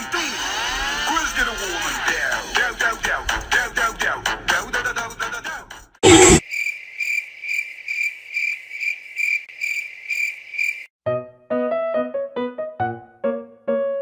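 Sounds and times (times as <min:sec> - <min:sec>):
cricket chirping: 0:06.4 - 0:10.9
piano music: 0:11.0 - 0:14.0.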